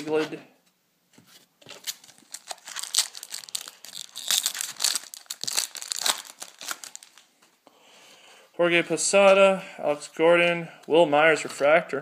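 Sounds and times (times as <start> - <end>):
foil wrapper tearing and crinkling: 1.7 - 7.2.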